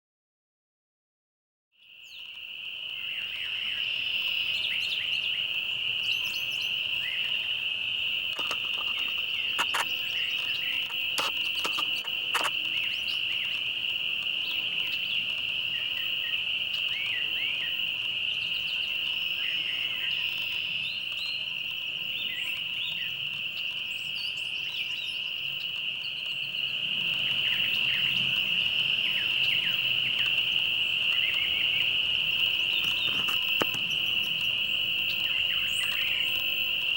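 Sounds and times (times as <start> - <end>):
bird chirps: 1.8 - 36.9
insect chorus: 1.8 - 36.9
sharp clicks: 8.3 - 12.6.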